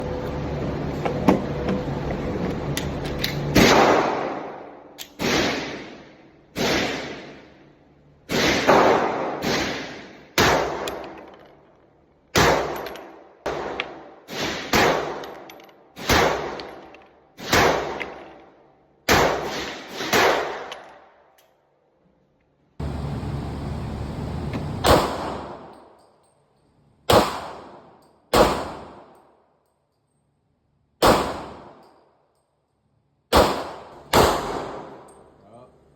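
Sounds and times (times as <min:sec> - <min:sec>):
gunshots with echo: 0:08.3 - 0:11.1, 0:27.1 - 0:29.1, 0:31.0 - 0:31.8, 0:33.3 - 0:35.1.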